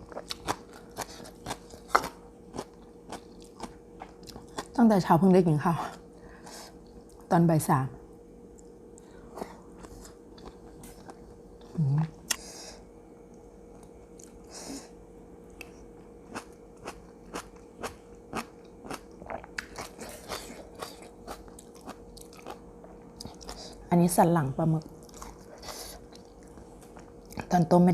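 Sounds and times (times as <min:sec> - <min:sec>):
chewing and crunching: 0:00.0 - 0:04.8, 0:08.5 - 0:12.5, 0:13.3 - 0:14.5, 0:15.4 - 0:23.9, 0:24.7 - 0:27.6.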